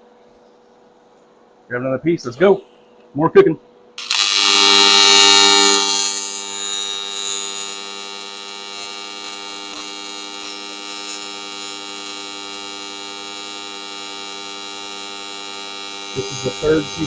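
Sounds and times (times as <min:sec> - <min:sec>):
welding arc buzzing: 0:04.0 - 0:17.0.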